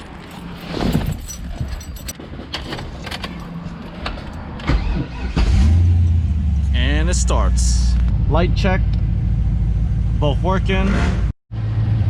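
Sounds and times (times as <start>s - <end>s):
car keys jangling: 0.0s - 4.4s.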